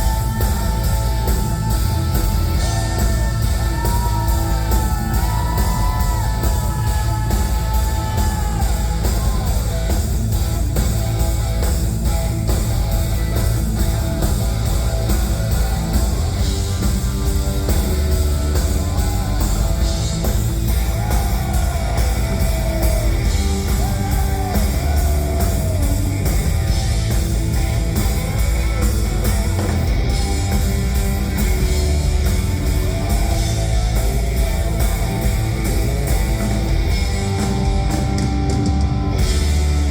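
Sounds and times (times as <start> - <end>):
loud rock music: 0.0 - 39.9.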